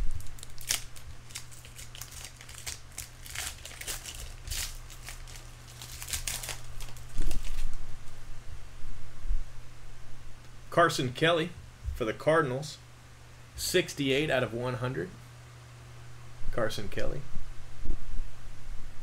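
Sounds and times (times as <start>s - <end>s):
wrappers crinkling and rustling: 0.0s - 8.2s
low electrical hum: 0.0s - 19.0s.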